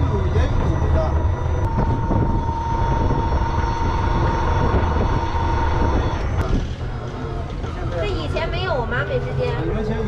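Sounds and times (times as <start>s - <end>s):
electric motor high whine: 0.0s - 8.0s
low rumble of ride: 0.0s - 10.0s.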